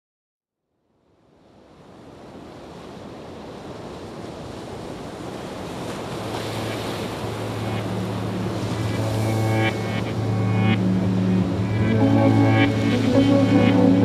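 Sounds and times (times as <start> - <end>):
rushing surf-like noise: 2.0 - 14.0
low sustained musical note: 7.3 - 14.0.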